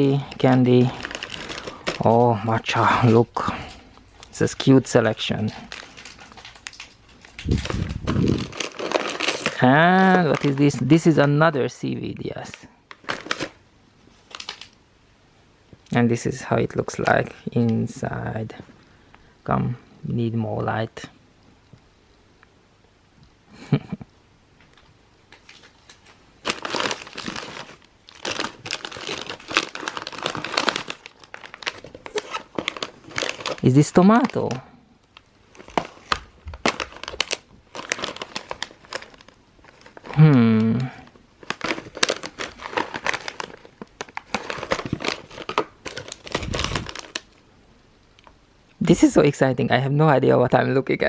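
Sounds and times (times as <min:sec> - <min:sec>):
wrappers crinkling: 0:00.0 - 0:11.6, 0:12.4 - 0:14.8, 0:25.3 - 0:47.4.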